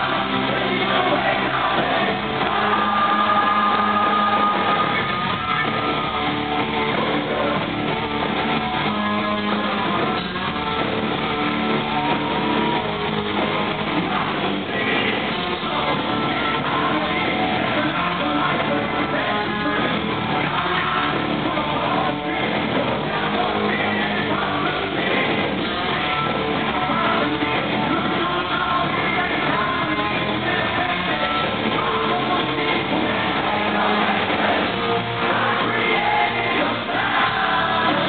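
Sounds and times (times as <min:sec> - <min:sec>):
rock band playing live: 0:00.0 - 0:38.0.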